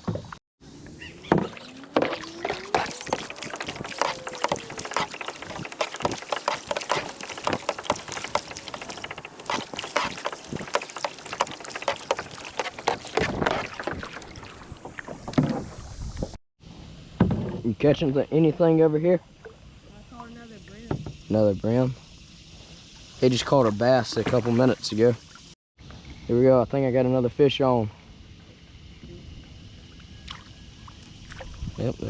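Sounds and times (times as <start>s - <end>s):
water splashing and lapping: 0.8s - 16.4s, 30.2s - 31.6s.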